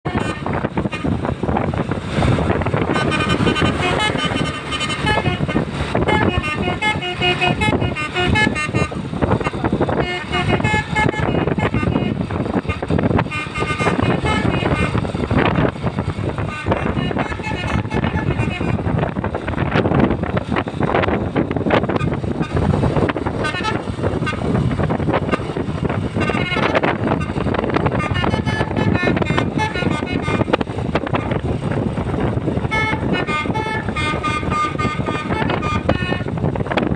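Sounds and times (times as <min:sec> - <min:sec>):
loud noisy rumble: 0:00.0 - 0:36.9
horn playing quick melody: 0:02.8 - 0:15.1, 0:16.4 - 0:18.9, 0:26.1 - 0:31.4, 0:32.7 - 0:36.4.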